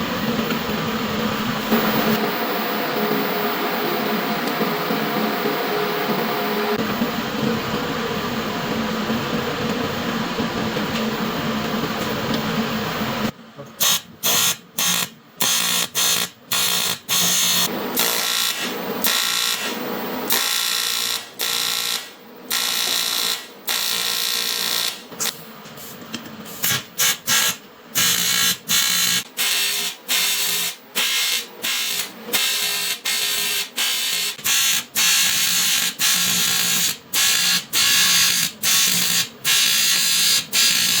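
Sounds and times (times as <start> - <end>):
welding arc buzzing and crackling: 13.8 - 25.4, 26.5 - 41.0.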